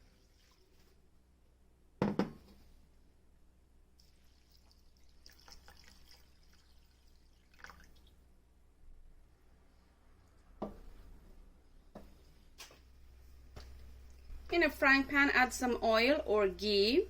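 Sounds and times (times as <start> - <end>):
water pouring and swishing: 0.0 - 1.0, 4.0 - 8.2.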